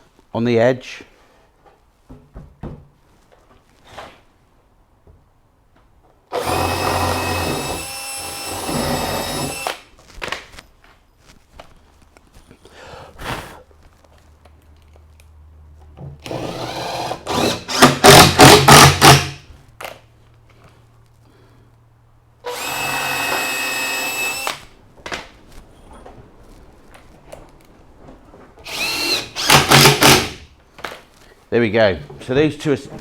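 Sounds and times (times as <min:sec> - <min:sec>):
power drill driving screw into wood: 0:06.3 - 0:09.9, 0:16.2 - 0:19.4, 0:22.5 - 0:24.7, 0:28.6 - 0:30.4.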